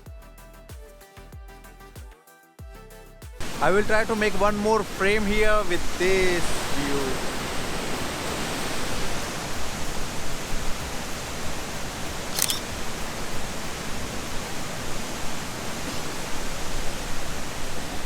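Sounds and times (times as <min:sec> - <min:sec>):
waterfall rushing: 0:03.4 - 0:18.0
camera shutter click: 0:12.3 - 0:12.7.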